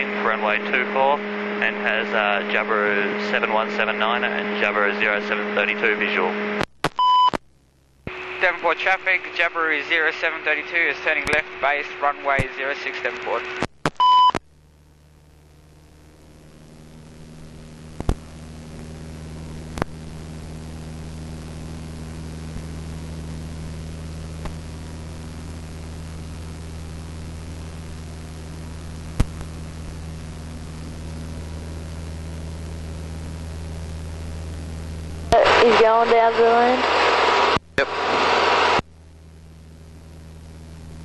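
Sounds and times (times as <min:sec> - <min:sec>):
steady radio hiss: 0:00.0 - 0:06.3, 0:08.1 - 0:13.7, 0:28.0 - 0:38.8
aircraft engine drone: 0:00.0 - 0:06.6, 0:08.1 - 0:13.6, 0:15.3 - 0:38.8.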